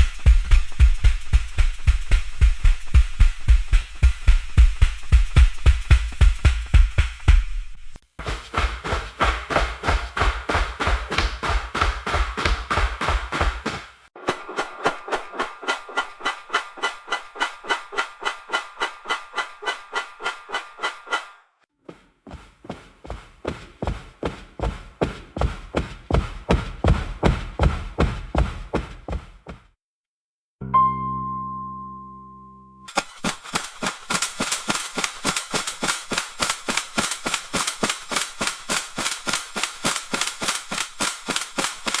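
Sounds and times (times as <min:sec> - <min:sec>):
dishwasher pulsing through wall: 0:08.2 - 0:14.0, 0:22.3 - 0:29.3.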